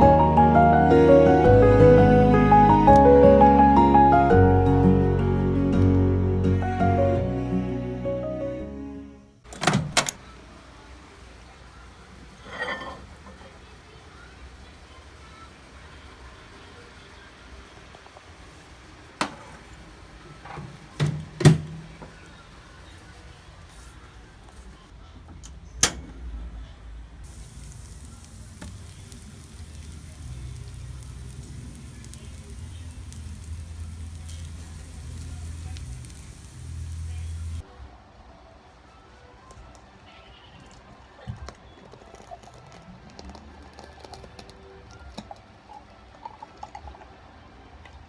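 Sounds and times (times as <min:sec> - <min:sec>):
soft background music: 0:00.0 - 0:09.4
low steady hum: 0:25.9 - 0:37.6
food sizzling in a frying pan: 0:27.2 - 0:37.7.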